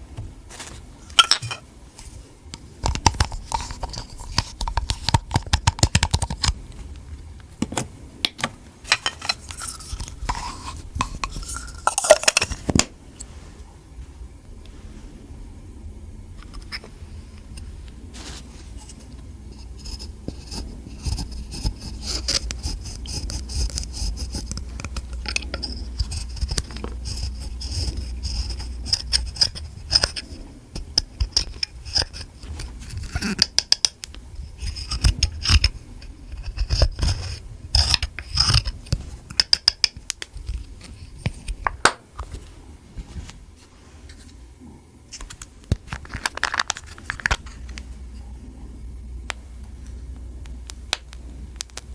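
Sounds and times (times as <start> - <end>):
slime scraping: 8.9 - 12.8, 16.4 - 39.6.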